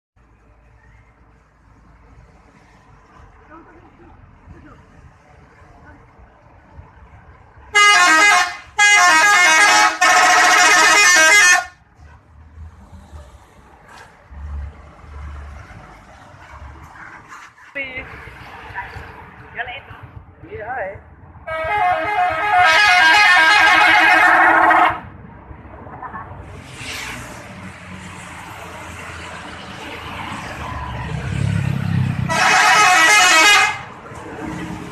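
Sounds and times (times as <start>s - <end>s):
bus engine rumble: 0.2s - 34.9s
musical bus air horn: 7.7s - 11.8s, 21.5s - 25.0s, 32.3s - 33.9s.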